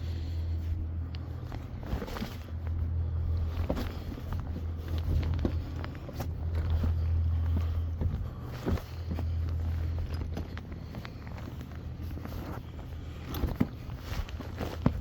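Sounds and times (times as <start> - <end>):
low rumble: 0.0 - 15.0
footsteps crunching on rocks: 3.4 - 15.0.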